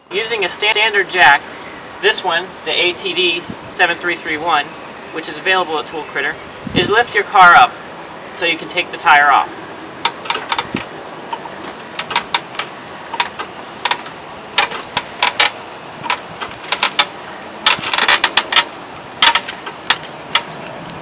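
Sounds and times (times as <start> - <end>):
hydraulic jack pumping clicks: 10.0 - 20.5.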